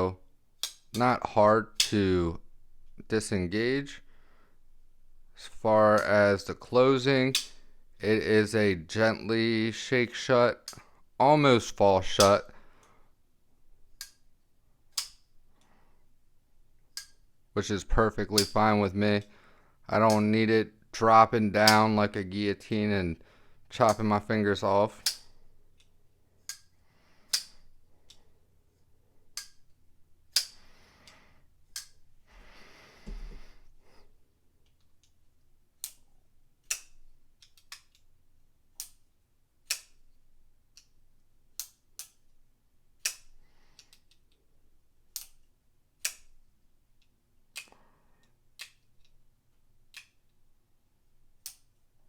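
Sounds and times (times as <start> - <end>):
folding knife blade clicking: 0.6 - 1.0, 7.3 - 7.7, 14.9 - 15.3, 17.0 - 17.2, 25.0 - 25.9, 26.5 - 26.7, 27.3 - 28.2, 29.4 - 29.7, 30.3 - 30.6, 31.7 - 32.0, 36.6 - 38.0, 39.6 - 40.0, 43.0 - 44.2, 45.1 - 46.4.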